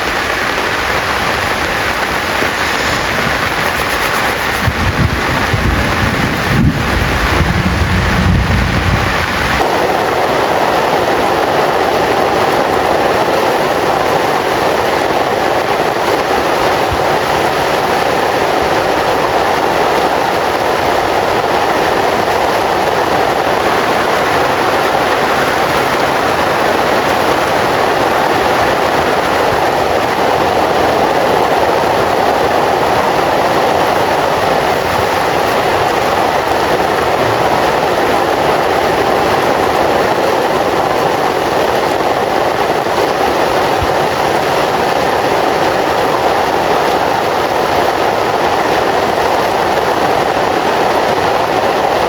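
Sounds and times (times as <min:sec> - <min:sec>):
heavy rain falling: 0:00.0 - 0:52.0
low thunder rumble: 0:01.0 - 0:11.8.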